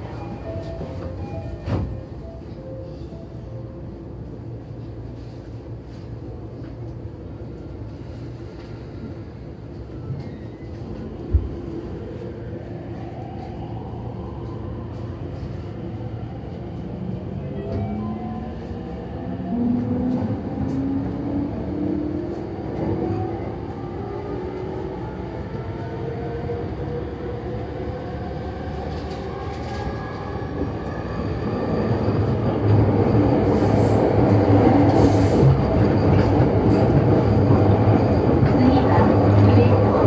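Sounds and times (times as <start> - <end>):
wheels rumbling on rail: 14.4 - 40.0.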